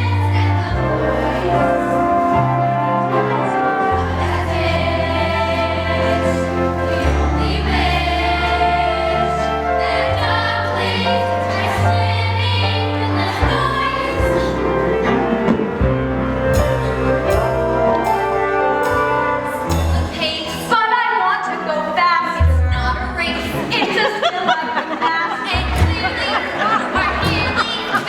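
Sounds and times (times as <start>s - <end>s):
voices singing together: 0.0s - 18.6s
instrumental accompaniment: 0.0s - 23.9s.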